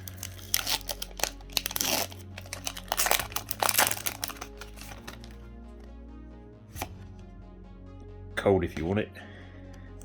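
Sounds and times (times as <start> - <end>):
foil wrapper crinkling and tearing: 0.0 - 5.4.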